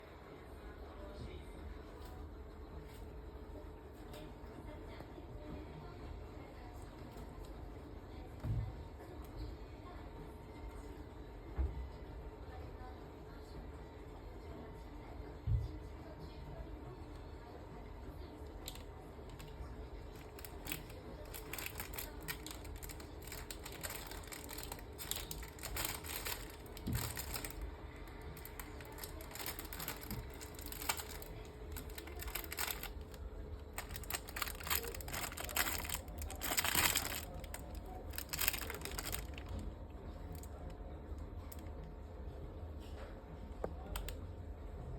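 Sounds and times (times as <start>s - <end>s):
crinkly material rustling and clicking: 18.5s - 40.8s, 43.6s - 44.2s.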